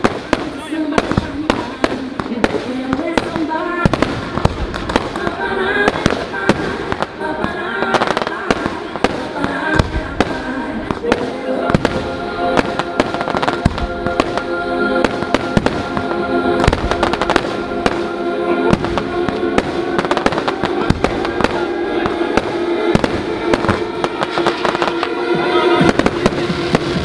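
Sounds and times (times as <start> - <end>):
fireworks bursting and crackling: 0.0 - 27.0
music over a pa system: 0.0 - 27.0.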